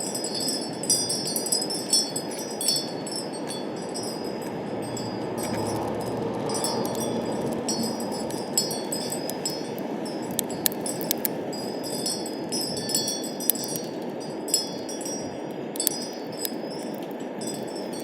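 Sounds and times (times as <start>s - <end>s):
metal chimes ringing: 0.0s - 18.0s
wind rushing: 2.2s - 12.0s.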